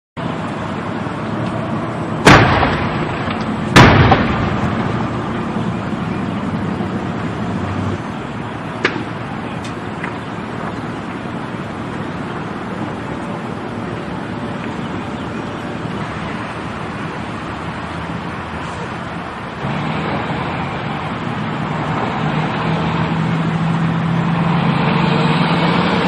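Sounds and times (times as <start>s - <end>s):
steady rushing noise: 0.2s - 26.0s
loud explosions: 2.2s - 6.2s
small bang: 2.3s - 5.0s.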